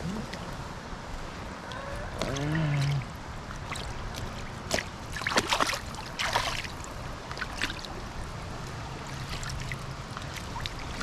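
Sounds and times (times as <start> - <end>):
stream current rushing: 0.0 - 11.0
fish splashing in water: 2.2 - 8.2.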